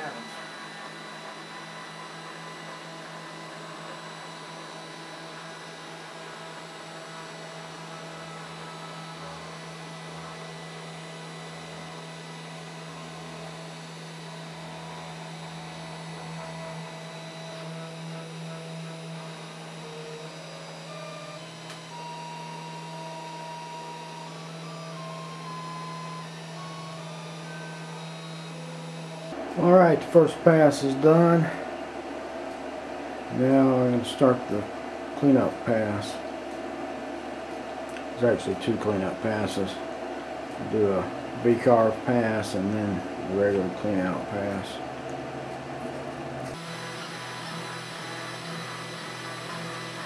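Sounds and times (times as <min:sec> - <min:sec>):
motor whines: 0:00.0 - 0:37.2, 0:40.6 - 0:50.0
engraver spindle hum: 0:00.0 - 0:50.0.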